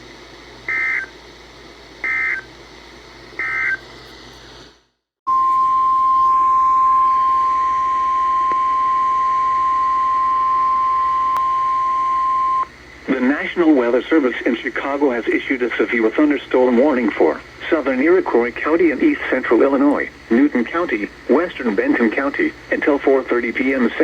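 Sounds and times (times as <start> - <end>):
steady alarm tone: 0.7 - 1.1, 2.0 - 2.5, 3.4 - 3.8, 5.3 - 12.7
faint radio hiss: 13.0 - 24.0.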